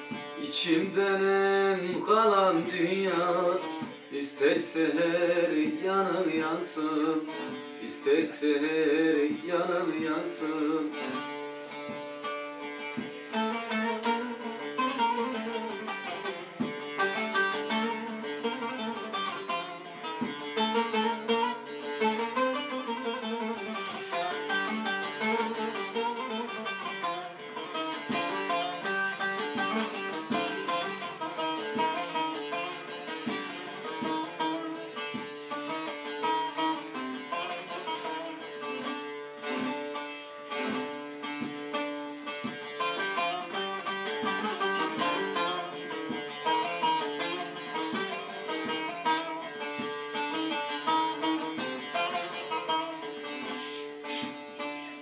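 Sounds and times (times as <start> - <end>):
plucked long-necked lute melody: 0.0 - 55.0.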